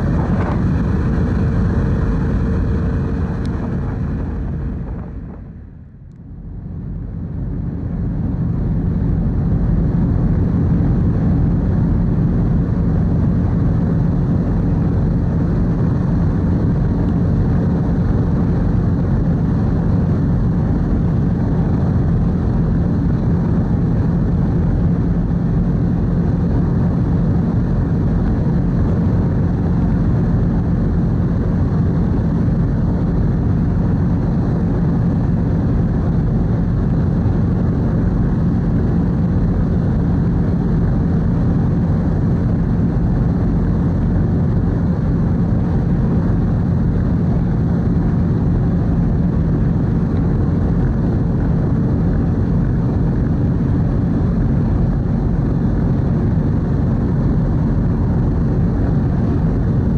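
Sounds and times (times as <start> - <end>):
ferry engines droning: 0.0 - 7.6
faint steady hum: 0.0 - 59.9.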